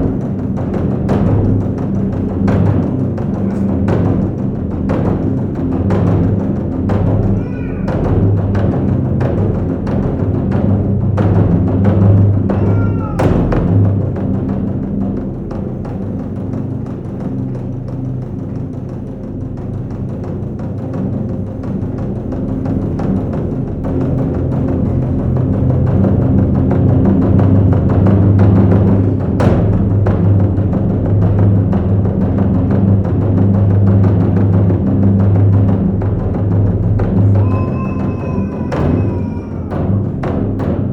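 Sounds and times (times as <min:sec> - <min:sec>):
sharp drum strikes: 0:00.0 - 0:15.3, 0:28.2 - 0:40.9
music with drums and bass: 0:00.0 - 0:40.9
sharp accented drum hit: 0:11.2 - 0:14.4.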